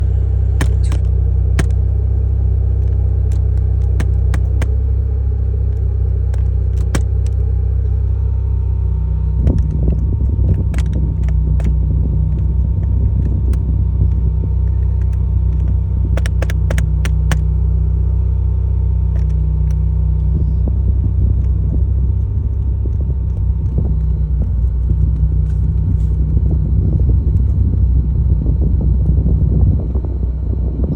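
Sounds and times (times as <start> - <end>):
rotary engine idling: 0.0 - 30.2
sharp clicks: 0.6 - 1.9, 2.8 - 4.8, 5.7 - 7.5, 9.5 - 17.5.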